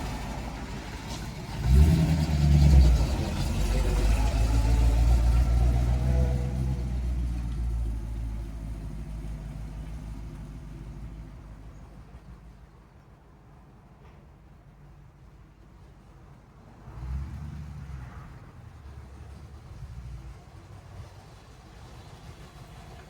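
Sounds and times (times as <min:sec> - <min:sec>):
truck engine revving: 0:00.0 - 0:11.8.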